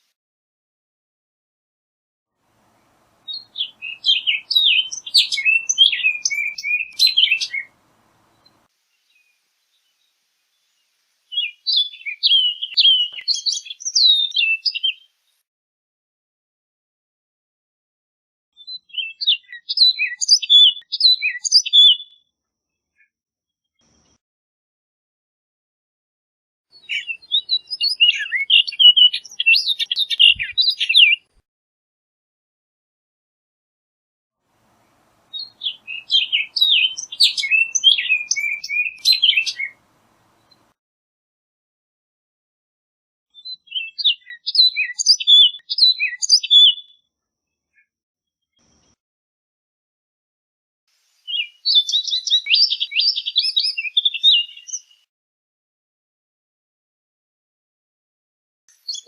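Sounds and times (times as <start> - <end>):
bird singing whistled notes: 2.8 - 9.3, 11.3 - 15.2, 18.6 - 22.1, 26.7 - 31.3, 35.3 - 40.7, 43.4 - 46.9, 51.2 - 55.1, 58.7 - 59.0.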